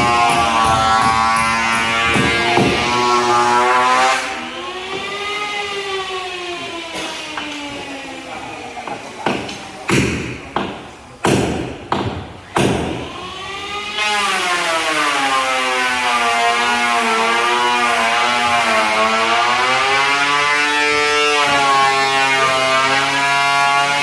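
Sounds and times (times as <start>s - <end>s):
sharp knocks: 0.0s - 3.4s, 8.8s - 13.1s.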